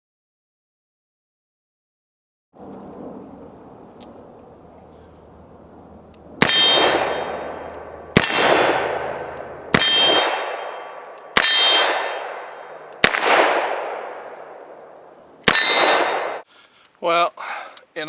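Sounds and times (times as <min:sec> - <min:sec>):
steel target clanging: 0:06.4 - 0:14.0, 0:15.4 - 0:16.4.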